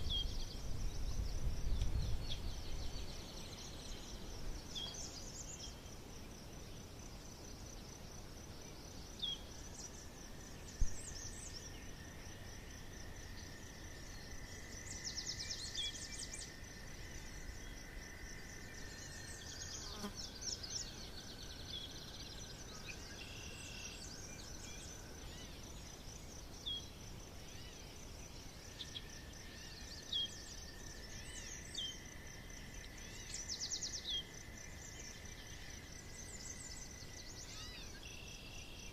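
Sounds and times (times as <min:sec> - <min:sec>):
high insect buzz: 0:00.0 - 0:38.9.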